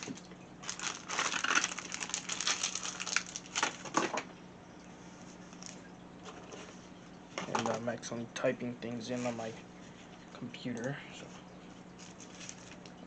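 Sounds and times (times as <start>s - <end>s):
plastic packaging crinkling: 0.0s - 4.2s, 11.9s - 13.0s.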